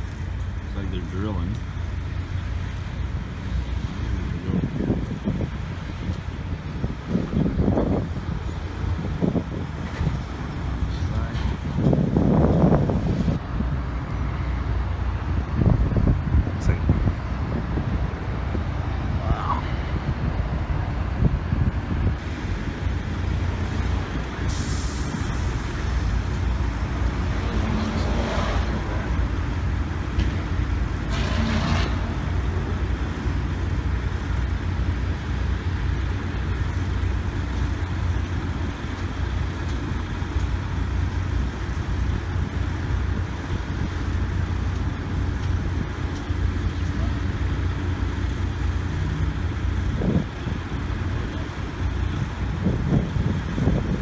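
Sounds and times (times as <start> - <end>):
drilling rig engine drone: 0.0 - 54.0
short hisses: 24.5 - 25.5.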